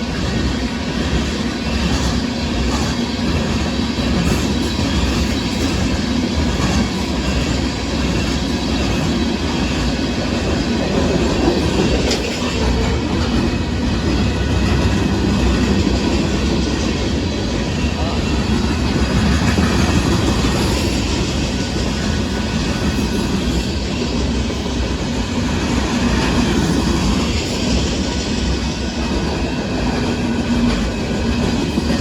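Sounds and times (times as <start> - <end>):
train wheels rumbling on rail: 0.0 - 32.0
wheels clacking over rail joints: 0.2 - 24.5.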